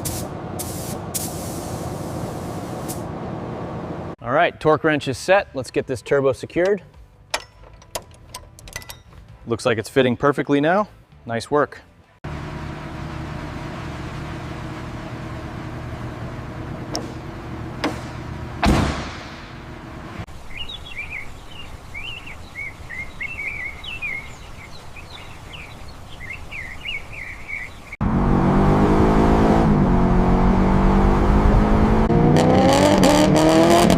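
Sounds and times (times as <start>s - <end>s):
birds chirping: 20.3s - 28.0s
car engine revving: 28.0s - 33.9s.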